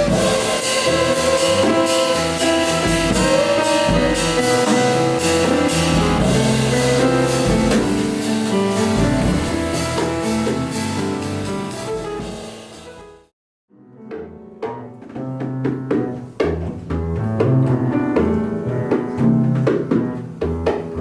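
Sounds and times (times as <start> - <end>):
bass guitar: 0.0 - 13.1
drum kit with cymbals: 0.0 - 13.3, 14.1 - 21.0
piano: 0.0 - 21.0.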